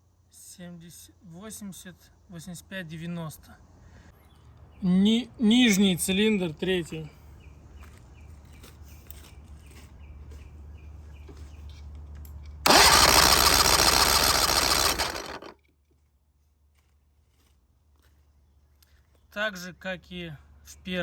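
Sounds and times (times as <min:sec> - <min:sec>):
outboard motor cranking: 0:12.7 - 0:15.5
outboard motor running: 0:12.7 - 0:15.5.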